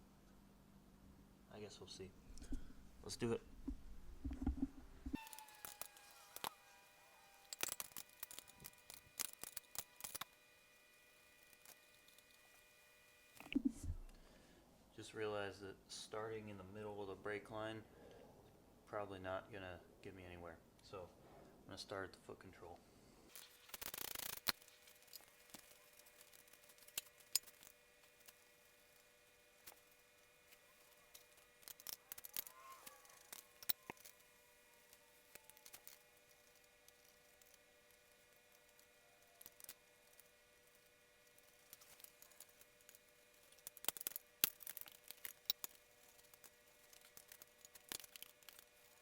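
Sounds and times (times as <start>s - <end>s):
faint steady hum: 0.0s - 49.0s
rapid ratchet clicks: 23.6s - 25.1s.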